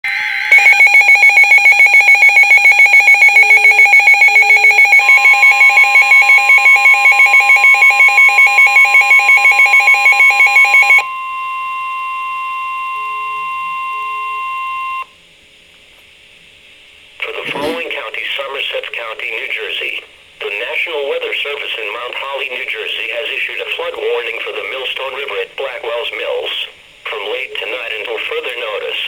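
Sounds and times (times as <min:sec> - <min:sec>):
pulsing alarm beeps: 0:00.3 - 0:15.0.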